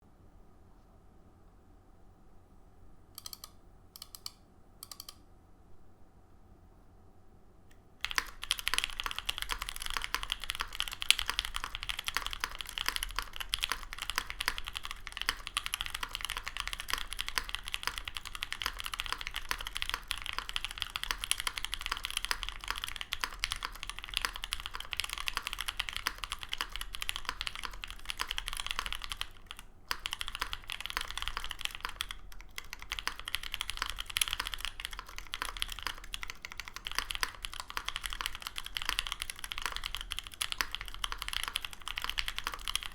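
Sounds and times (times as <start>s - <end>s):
fast typing on mechanical keyboard: 8.0s - 42.9s.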